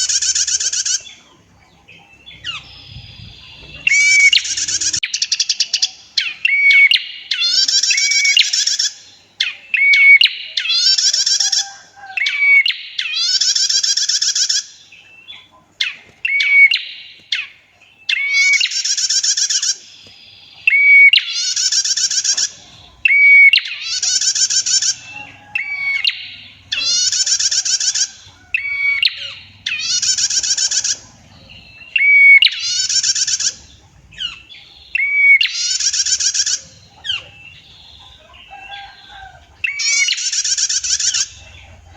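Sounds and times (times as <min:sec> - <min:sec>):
bird buzzy trilling call: 0:00.0 - 0:14.9, 0:18.1 - 0:41.8.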